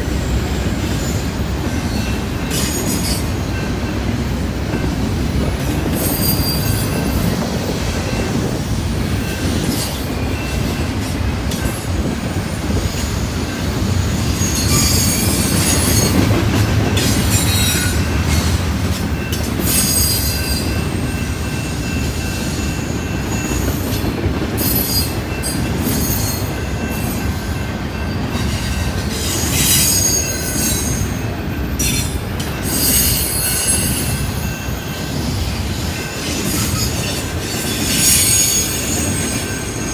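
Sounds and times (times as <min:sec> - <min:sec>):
rumble of wheels on rail: 0:00.0 - 0:39.9
high-pitched wheel squeal: 0:32.7 - 0:34.2, 0:36.4 - 0:39.9.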